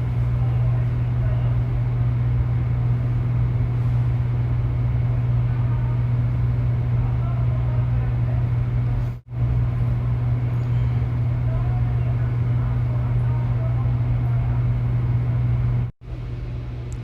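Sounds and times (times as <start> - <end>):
low machine hum: 0.0 - 17.0.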